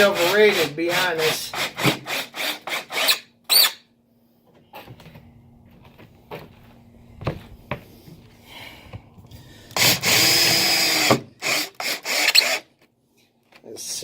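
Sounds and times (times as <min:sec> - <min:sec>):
power drill driving a screw: 0:01.5 - 0:03.7, 0:09.8 - 0:12.7.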